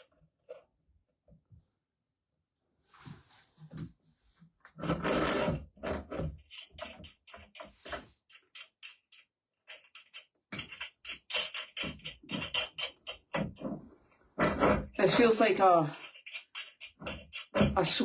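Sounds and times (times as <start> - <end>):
metal parts clicking and rattling: 4.9 - 13.7, 16.0 - 17.8.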